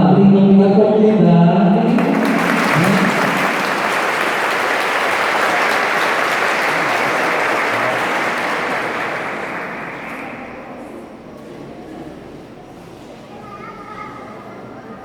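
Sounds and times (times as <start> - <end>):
congregation applauding: 1.9 - 10.9.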